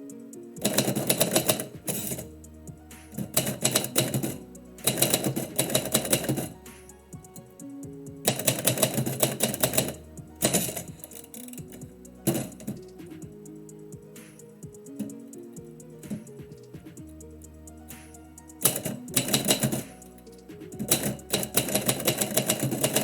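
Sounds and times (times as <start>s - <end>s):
typewriter keys typing: 0.6s - 2.3s, 3.1s - 6.6s, 8.3s - 12.8s, 18.6s - 20.2s, 20.8s - 23.0s.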